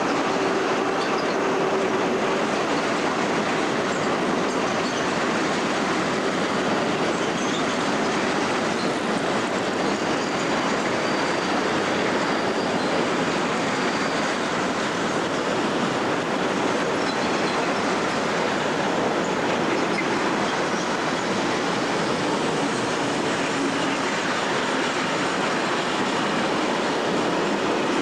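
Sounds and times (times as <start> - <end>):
faint high wheel squeal: 0.0 - 1.9, 3.9 - 5.2, 7.1 - 9.0, 9.8 - 14.6, 17.0 - 18.1
train wheels rolling on rail: 0.0 - 28.0.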